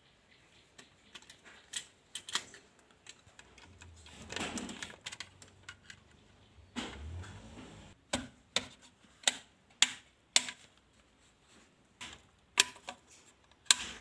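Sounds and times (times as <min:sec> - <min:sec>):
hard objects clicking and knocking: 0:01.1 - 0:10.6.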